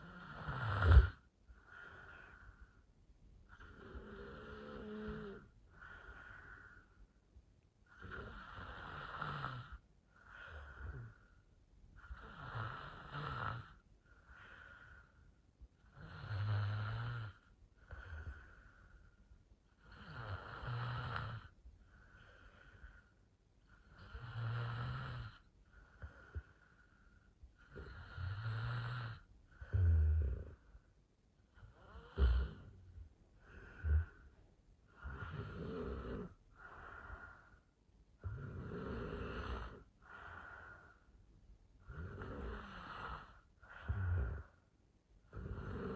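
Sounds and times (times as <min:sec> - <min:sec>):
woman snoring: 0:00.0 - 0:01.2, 0:03.5 - 0:05.5, 0:07.9 - 0:11.1, 0:12.2 - 0:13.8, 0:19.9 - 0:21.5, 0:23.9 - 0:25.4, 0:27.7 - 0:30.6, 0:31.6 - 0:32.8, 0:33.4 - 0:34.3, 0:34.9 - 0:37.3, 0:38.2 - 0:39.9, 0:41.9 - 0:44.5, 0:45.3 - 0:45.9.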